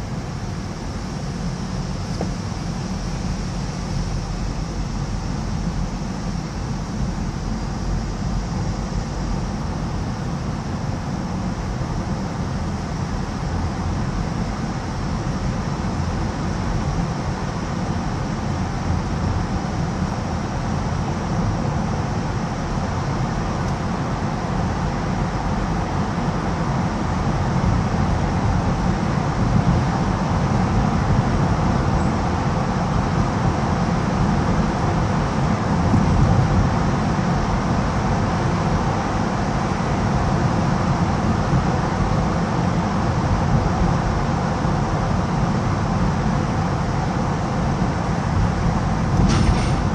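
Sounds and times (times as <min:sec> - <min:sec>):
traffic rumble in a tunnel: 0:00.0 - 0:49.9.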